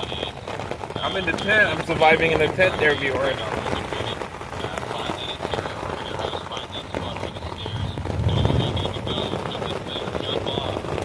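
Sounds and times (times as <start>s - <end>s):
rain pattering on a tent: 0.0s - 11.0s
low rumble: 3.4s - 10.9s.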